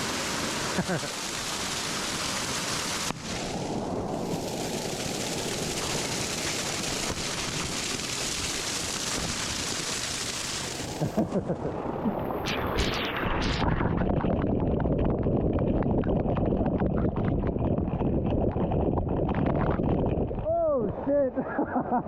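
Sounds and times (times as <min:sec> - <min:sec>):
waterfall rushing: 0:00.0 - 0:13.2.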